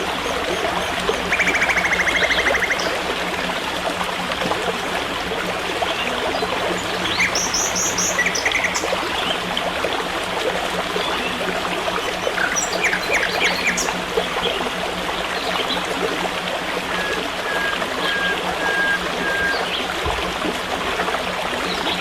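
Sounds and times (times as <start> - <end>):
small birds chirping: 0.0 - 3.4, 6.8 - 9.0, 12.4 - 14.0
forest stream running: 0.0 - 22.0.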